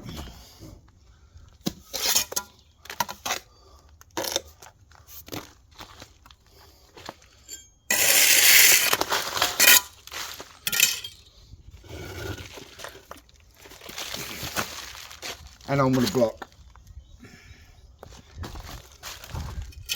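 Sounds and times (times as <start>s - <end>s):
trowel scraping and clinking: 2.0s - 2.5s, 7.4s - 11.3s.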